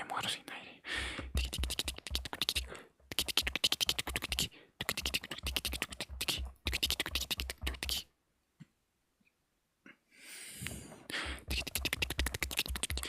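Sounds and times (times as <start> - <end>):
wet lip and tongue clicks: 1.3 - 8.1, 11.4 - 13.0.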